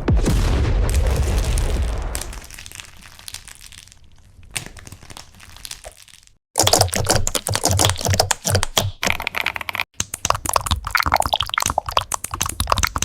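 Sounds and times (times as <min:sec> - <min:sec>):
squishy material crackling when squeezed: 0:02.1 - 0:13.0.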